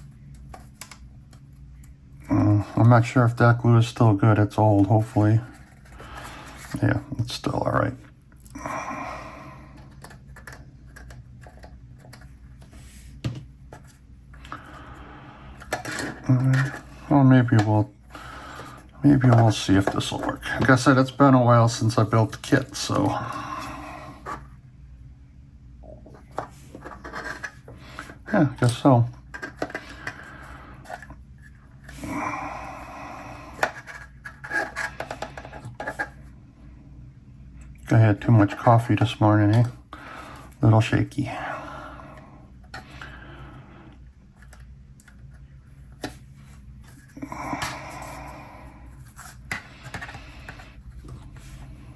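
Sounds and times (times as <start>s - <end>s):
plastic parts clicking and scraping: 9.8s - 14.7s, 15.6s - 16.9s, 26.1s - 32.0s, 33.5s - 36.2s, 49.0s - 51.5s.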